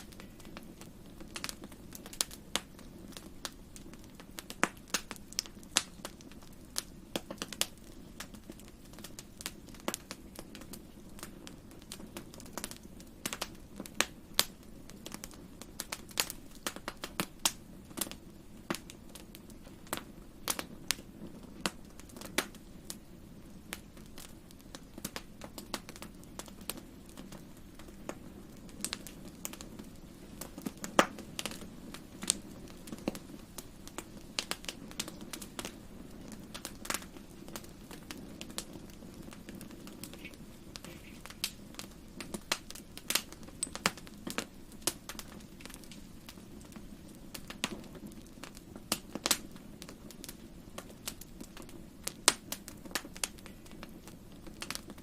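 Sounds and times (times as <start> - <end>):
wood fire crackling: 0.0 - 55.0.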